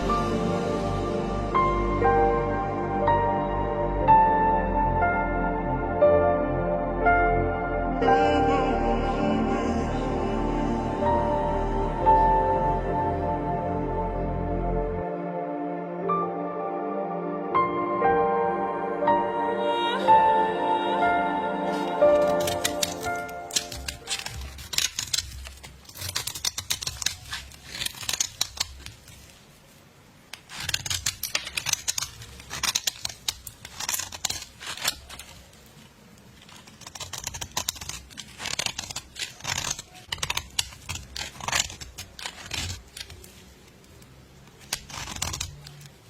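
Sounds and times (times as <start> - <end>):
rapid crisp clicks and crackles: 21.8 - 29.6, 30.2 - 46.0.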